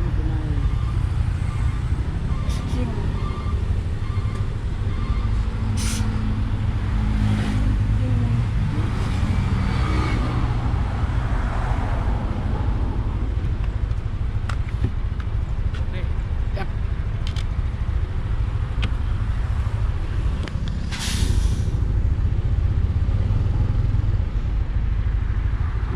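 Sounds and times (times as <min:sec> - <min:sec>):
bus engine rumble: 0:00.0 - 0:25.9
air hiss: 0:20.9 - 0:21.8.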